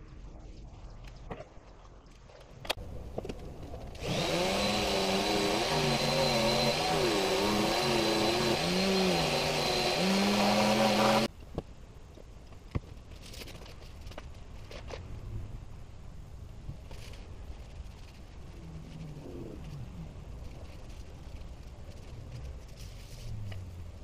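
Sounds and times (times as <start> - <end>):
electric power tool whining: 4.0 - 11.3.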